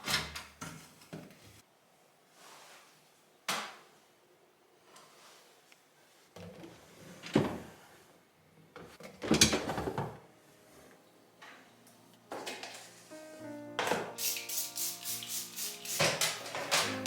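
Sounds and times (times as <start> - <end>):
soft music: 10.2 - 17.0.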